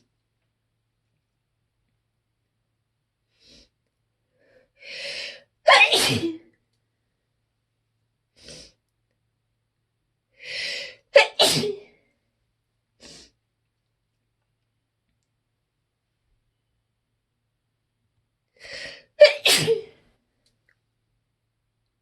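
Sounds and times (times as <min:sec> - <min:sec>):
person sneezing: 0:05.7 - 0:06.4, 0:11.2 - 0:11.9, 0:18.8 - 0:20.0.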